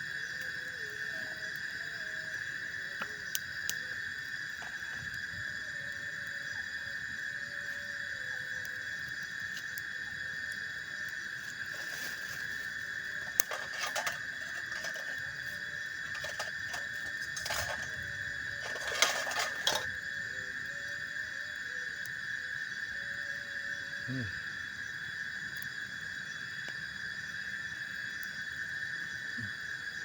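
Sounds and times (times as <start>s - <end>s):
high-pitched insect drone: 0.0s - 30.0s
knocks and rattles from handling: 13.2s - 15.3s, 16.0s - 18.0s, 18.6s - 19.9s.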